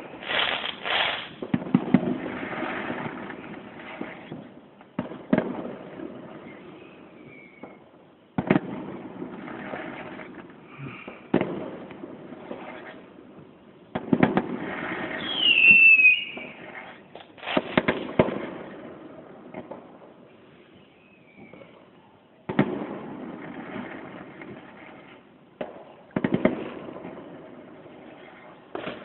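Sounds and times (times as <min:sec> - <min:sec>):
distant firework bangs: 0:00.0 - 0:07.8, 0:08.4 - 0:20.0, 0:22.4 - 0:29.0
firework crackling: 0:00.0 - 0:20.1, 0:22.5 - 0:29.0
whistling firework screech: 0:06.4 - 0:07.8, 0:14.9 - 0:17.8, 0:20.7 - 0:21.8.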